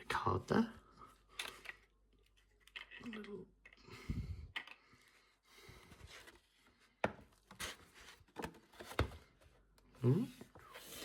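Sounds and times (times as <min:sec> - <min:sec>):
soft rustling of card packaging: 0:04.6 - 0:11.0.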